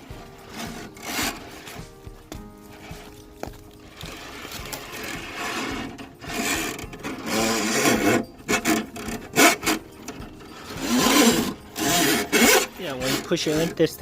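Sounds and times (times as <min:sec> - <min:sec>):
steel cable scraping: 0:00.0 - 0:14.0.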